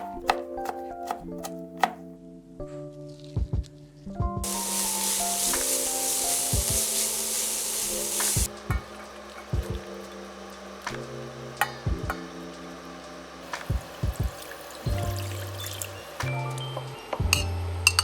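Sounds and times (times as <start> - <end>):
vegetables sizzling in hot oil: 4.4 - 16.6.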